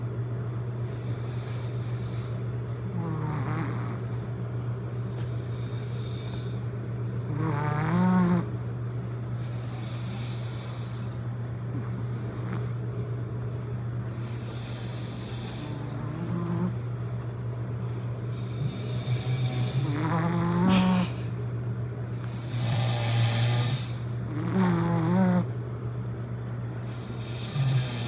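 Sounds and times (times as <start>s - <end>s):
steady low hum: 0.0s - 28.0s
person snoring: 0.9s - 4.0s, 7.3s - 8.5s, 14.2s - 16.8s, 18.3s - 21.4s, 22.2s - 25.5s, 26.8s - 28.0s.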